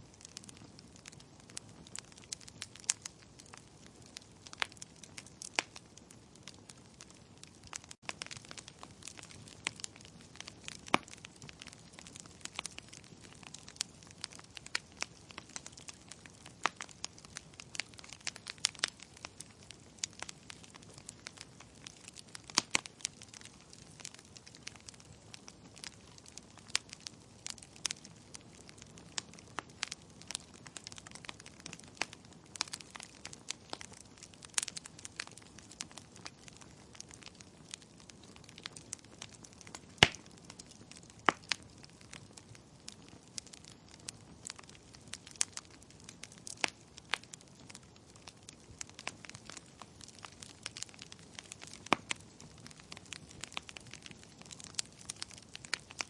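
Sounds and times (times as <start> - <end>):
logs popping and snapping: 39.5 - 40.4.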